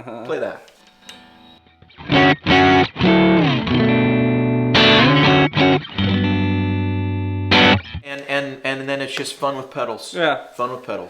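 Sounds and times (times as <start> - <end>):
electric guitar sliding notes: 1.4 - 8.1
electric guitar chord stabs: 1.7 - 8.0.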